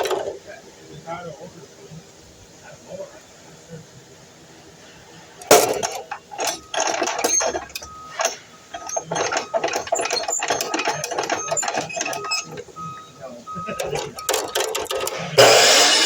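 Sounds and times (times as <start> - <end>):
mechanical clattering and rattling: 0.0 - 0.4, 5.4 - 16.0
short high squeak: 6.5 - 13.2.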